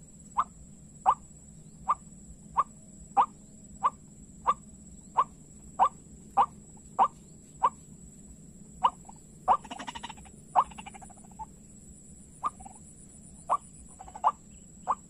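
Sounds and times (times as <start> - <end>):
faint high whine: 0.0 - 15.0
waterhen calling: 8.8 - 11.5, 12.4 - 12.8, 13.5 - 15.0.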